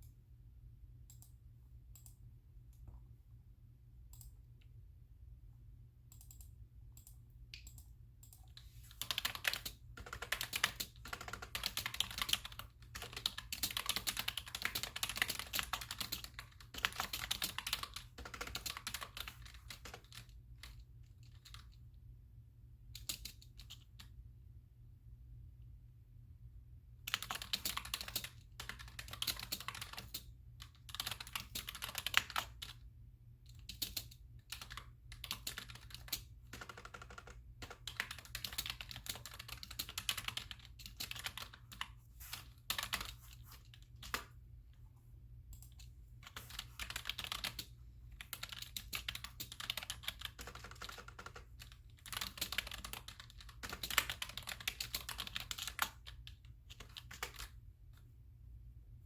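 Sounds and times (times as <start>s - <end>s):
computer keyboard typing: 6.1s - 21.9s, 22.9s - 24.2s, 27.0s - 44.9s, 45.5s - 57.6s.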